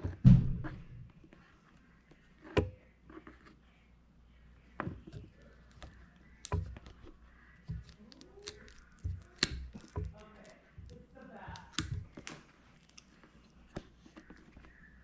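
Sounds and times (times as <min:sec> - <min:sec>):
sharp clicks and snaps: 0:07.7 - 0:13.2.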